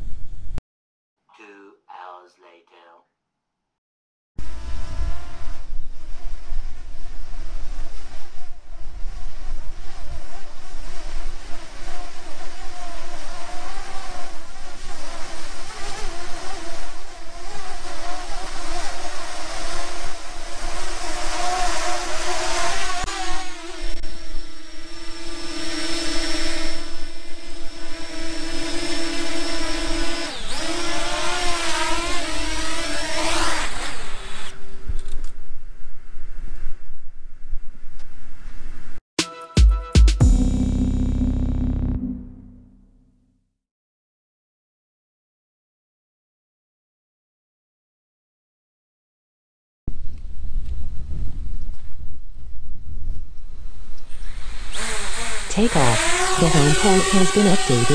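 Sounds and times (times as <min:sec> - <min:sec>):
drone propellers buzzing: 0:54.9 - 0:57.9.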